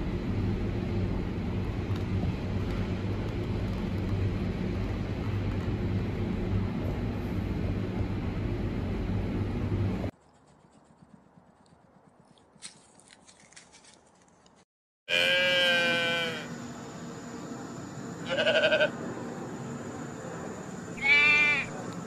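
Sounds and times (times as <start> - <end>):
sheep bleating: 15.1 - 16.5, 18.2 - 18.9, 21.0 - 21.7.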